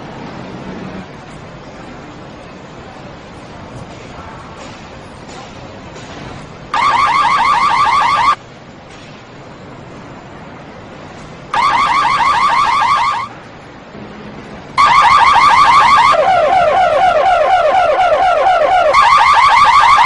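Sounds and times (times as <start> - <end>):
car alarm siren warbling: 6.7 - 8.4, 11.5 - 13.3, 14.8 - 20.0.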